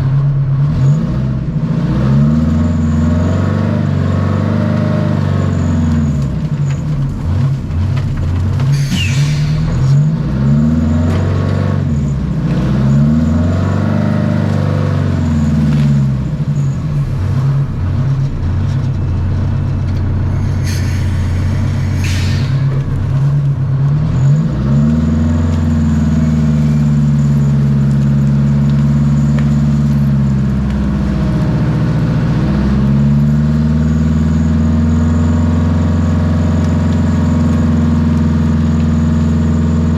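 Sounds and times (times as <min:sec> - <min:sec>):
diesel engine working under load: 0:00.0 - 0:39.9.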